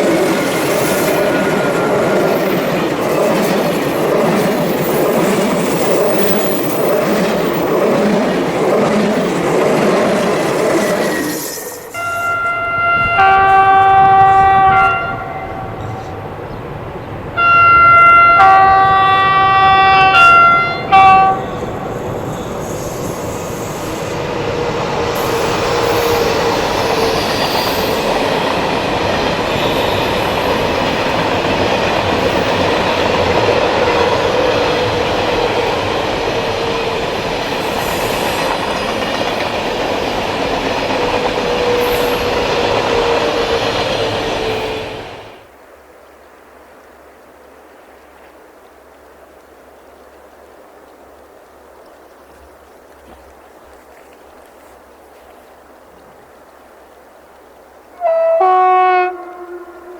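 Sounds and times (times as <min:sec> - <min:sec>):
train running past: 0:00.0 - 0:45.5
two-tone train horn: 0:11.9 - 0:16.2, 0:17.4 - 0:22.6, 0:57.9 - 0:59.9.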